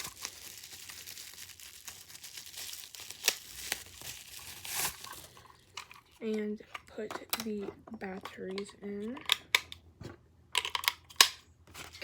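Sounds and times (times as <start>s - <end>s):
plastic packaging crinkling: 0.0s - 6.3s.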